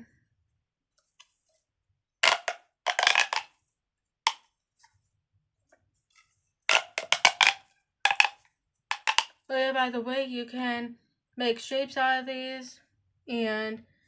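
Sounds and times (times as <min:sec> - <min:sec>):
pop tubes snapping: 0:02.2 - 0:03.6, 0:04.3 - 0:04.5, 0:06.7 - 0:09.4.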